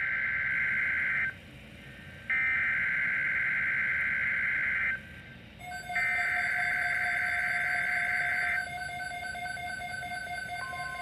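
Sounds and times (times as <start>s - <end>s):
steady low tone: 4.0s - 11.0s.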